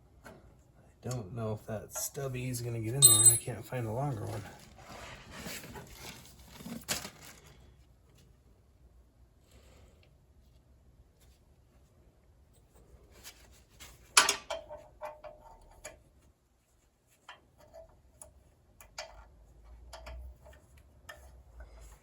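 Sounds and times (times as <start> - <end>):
sharp metal clank: 3.0 - 3.5
wrench clinking on metal bolt: 3.0 - 3.5.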